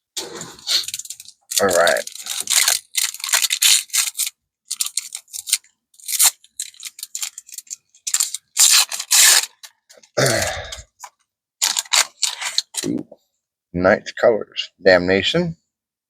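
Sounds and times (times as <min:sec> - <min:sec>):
plastic wrap and cardboard crinkling: 0:00.2 - 0:10.0, 0:11.0 - 0:12.9
brief vocal sound: 0:10.2 - 0:10.9.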